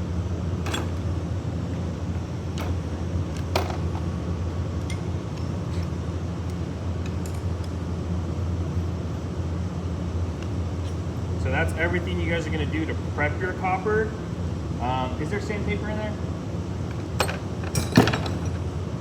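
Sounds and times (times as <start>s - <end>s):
low machine hum: 0.0s - 19.0s
metallic clinks of tools: 17.2s - 18.6s.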